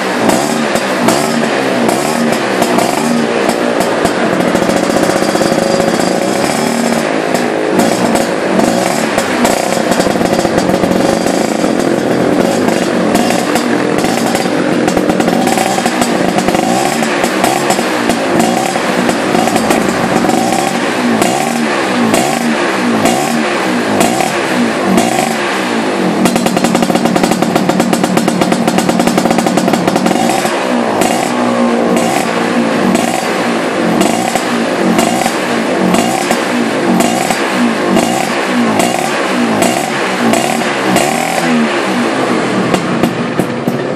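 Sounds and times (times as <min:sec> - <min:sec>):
scooter engine revving: 0:00.0 - 0:43.9.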